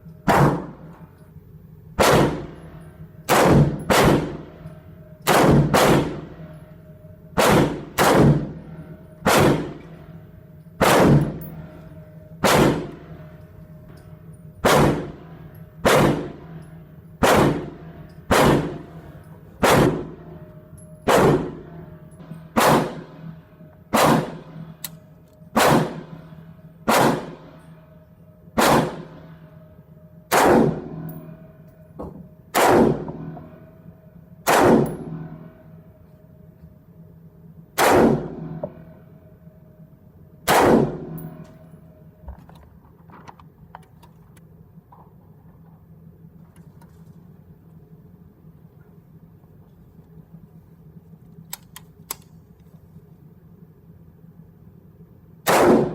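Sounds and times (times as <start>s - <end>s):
rifle shots: 0.2s - 0.9s, 2.0s - 6.5s, 7.4s - 10.1s, 10.8s - 11.8s, 12.4s - 13.3s, 14.6s - 16.6s, 17.2s - 20.4s, 21.1s - 24.8s, 25.5s - 27.6s, 28.6s - 29.4s, 30.3s - 31.3s, 32.5s - 33.6s, 34.4s - 35.5s, 37.8s - 38.9s, 40.4s - 41.4s, 55.4s - 55.9s.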